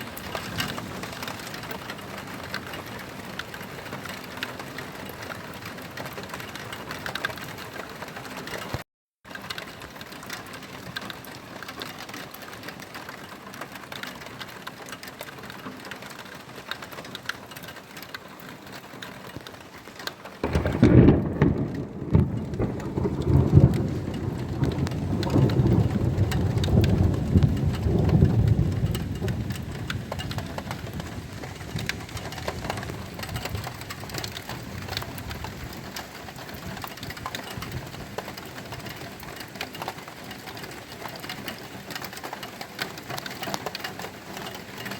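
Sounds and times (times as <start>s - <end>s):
steady rain falling: 0.0s - 44.9s
thunder rumble: 20.4s - 39.0s.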